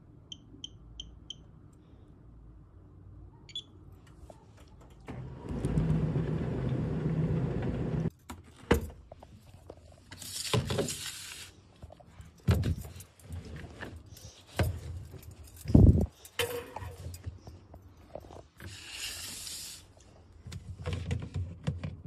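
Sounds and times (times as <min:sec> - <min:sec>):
tumble dryer humming: 0:05.1 - 0:08.1.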